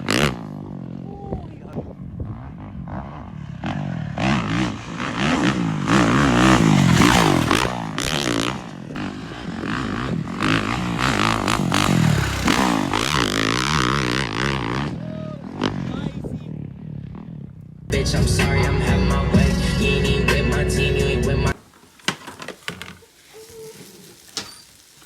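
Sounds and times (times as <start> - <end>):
tyres scraping on dirt: 2.3 - 16.4, 21.5 - 25.0.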